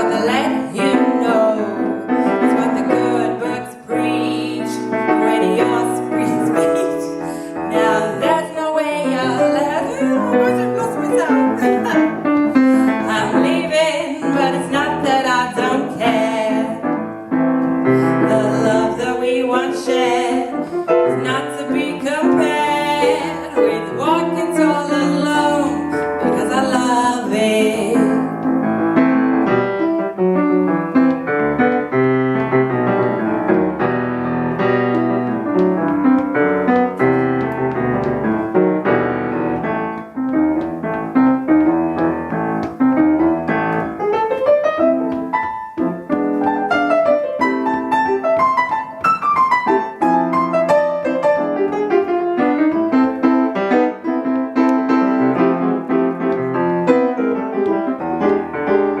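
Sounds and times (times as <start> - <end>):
piano playing: 0.0 - 59.0.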